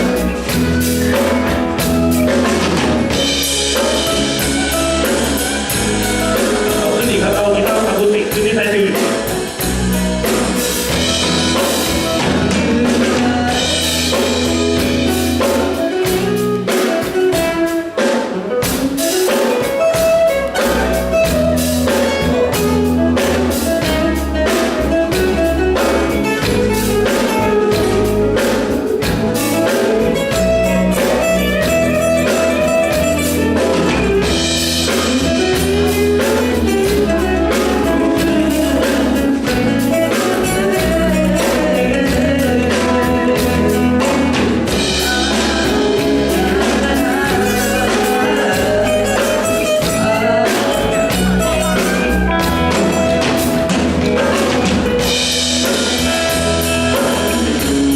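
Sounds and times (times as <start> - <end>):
drum kit steady beat: 0.0 - 57.9
live band playing through pa: 0.0 - 57.9
person singing: 3.8 - 9.7, 10.9 - 17.2, 34.9 - 54.8.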